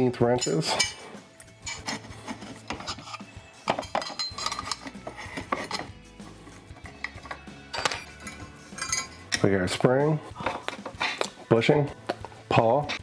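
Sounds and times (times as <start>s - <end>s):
wrenches clinking on metal: 0.2s - 6.0s, 6.8s - 9.8s
metal scraping: 0.2s - 11.6s.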